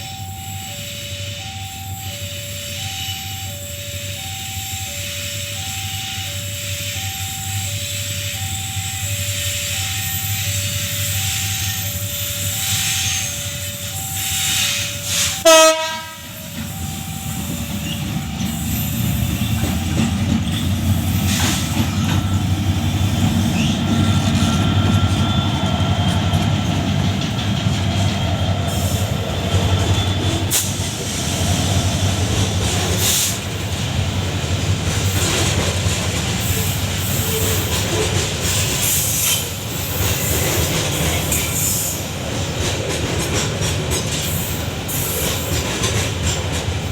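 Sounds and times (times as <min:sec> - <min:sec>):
two-tone warning signal beeps: 0:00.0 - 0:26.7
freight train wheels rumbling: 0:00.0 - 0:46.9
loud horn blast: 0:14.4 - 0:16.6
wheel squeals: 0:16.3 - 0:30.8, 0:36.4 - 0:42.1.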